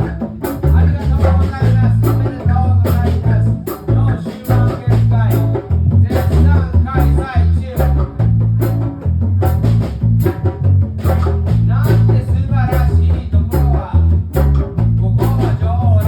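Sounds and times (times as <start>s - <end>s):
live reggae band playing: 0.0s - 16.0s
person singing: 0.6s - 8.2s.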